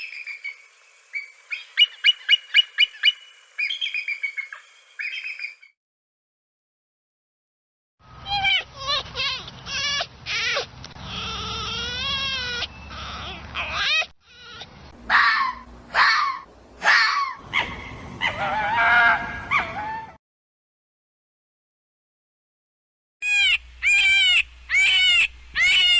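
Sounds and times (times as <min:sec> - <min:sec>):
fox yelping and screaming: 0:08.2 - 0:20.2, 0:23.2 - 0:25.9.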